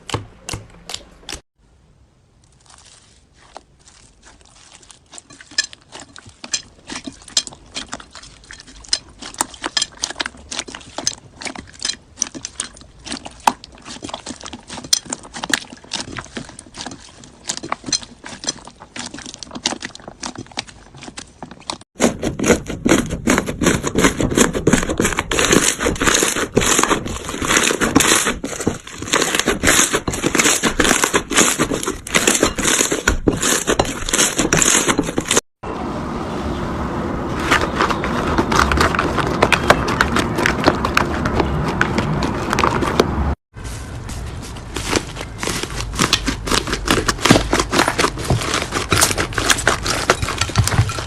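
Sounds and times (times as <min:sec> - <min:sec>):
slime popping and crackling: 0:02.5 - 0:21.8, 0:22.5 - 0:35.4.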